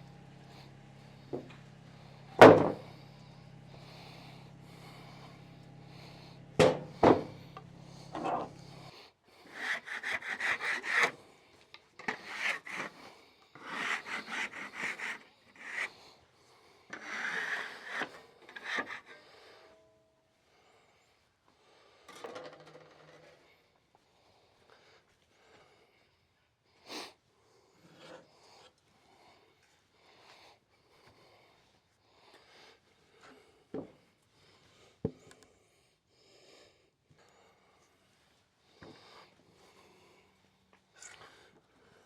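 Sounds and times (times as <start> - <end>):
hand tool scraping wood: 0.0 - 11.2, 12.0 - 16.0, 17.0 - 19.7
knocks on wood: 2.4 - 2.8, 6.6 - 7.4.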